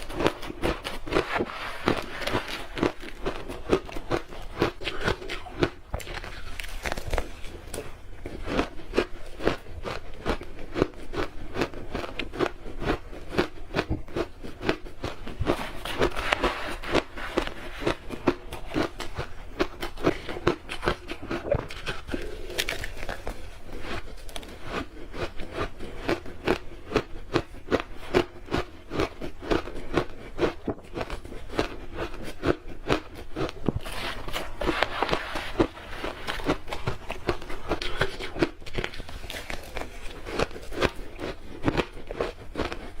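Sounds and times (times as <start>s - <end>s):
crunching ice chewing: 0.0s - 43.0s.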